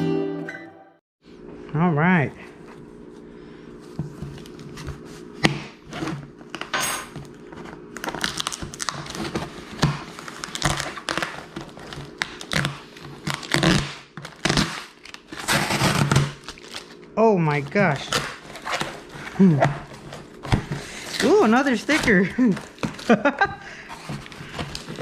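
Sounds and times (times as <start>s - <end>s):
cardboard box rustling and crinkling: 7.2s - 13.6s, 17.6s - 25.0s.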